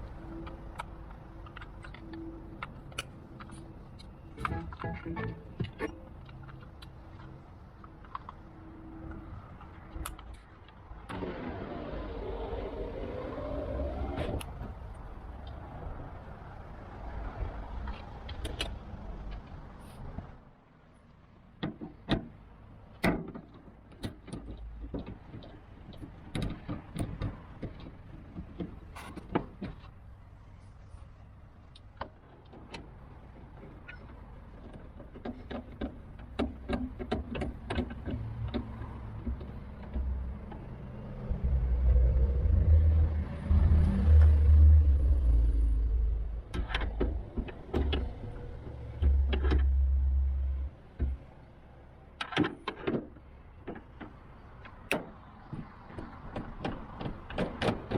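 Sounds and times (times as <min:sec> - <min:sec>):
heavy low rumble: 0:40.3 - 0:51.4.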